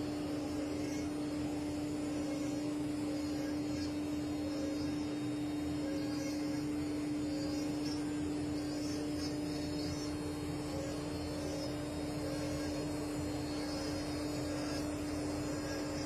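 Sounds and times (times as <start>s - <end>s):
router spindle whine: 0.0s - 16.0s
bit cutting wood hiss: 5.7s - 16.0s.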